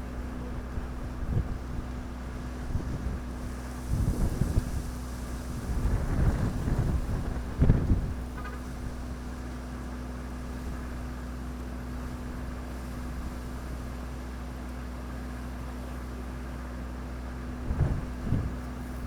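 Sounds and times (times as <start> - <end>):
low mechanical drone: 0.0 - 14.1, 17.0 - 19.0.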